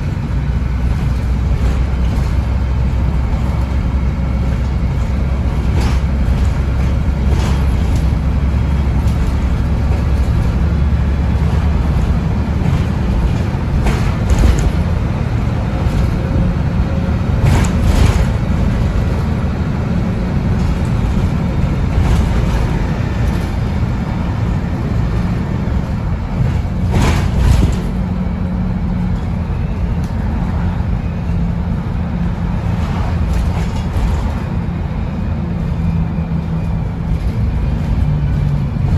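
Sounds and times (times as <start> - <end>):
short rattles and knocks: 0.0 - 28.5
bus diesel engine droning: 0.0 - 38.9.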